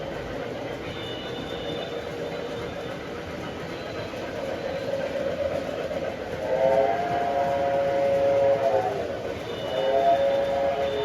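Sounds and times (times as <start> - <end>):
model train running: 0.0 - 11.0
train horn blast: 6.4 - 11.0.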